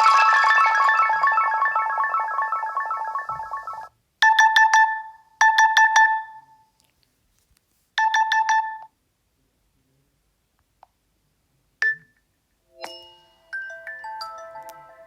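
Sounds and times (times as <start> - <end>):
tinkling melodic phone tone: 0.0 - 6.6, 12.8 - 15.0.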